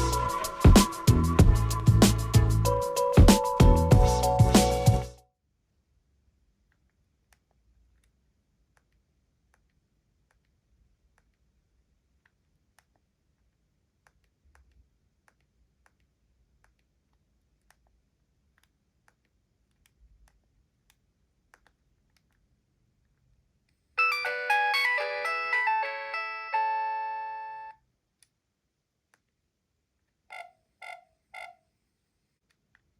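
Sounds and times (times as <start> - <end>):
polyphonic phone ringtone: 24.0 - 27.8.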